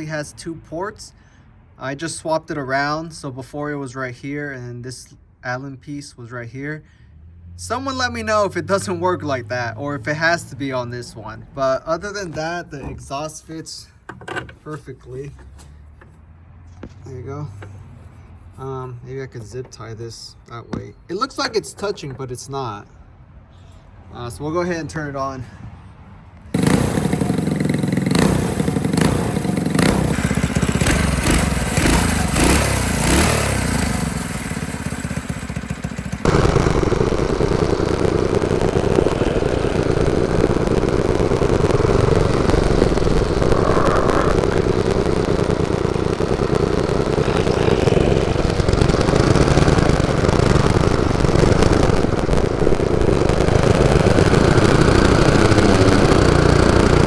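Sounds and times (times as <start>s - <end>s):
small engine revving: 26.4s - 57.0s.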